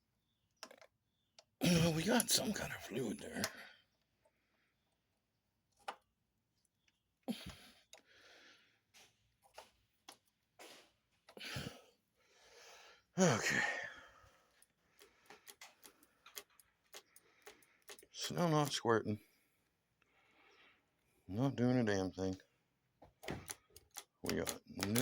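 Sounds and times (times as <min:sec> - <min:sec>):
man speaking: 0:01.6 - 0:03.6, 0:13.2 - 0:14.0, 0:18.2 - 0:19.2, 0:21.3 - 0:22.4, 0:24.2 - 0:25.0
man sighing and breathing heavily: 0:07.3 - 0:08.8, 0:11.3 - 0:15.4.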